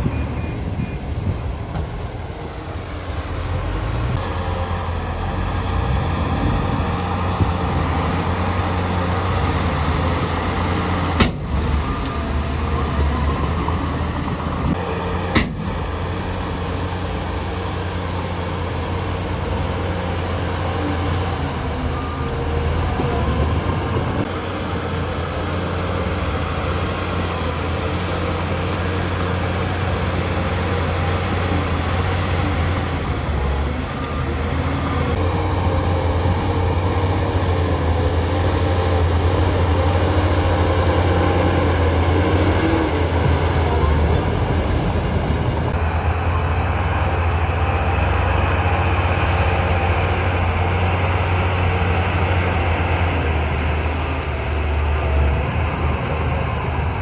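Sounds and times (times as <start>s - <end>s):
heavy diesel engines running: 0.0s - 57.0s
sharp knocks: 11.2s - 11.7s, 15.3s - 15.8s.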